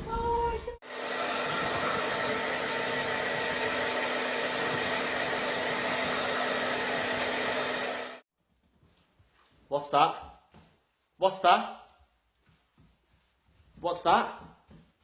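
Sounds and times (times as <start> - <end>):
electric blower motor humming: 0.8 - 8.2.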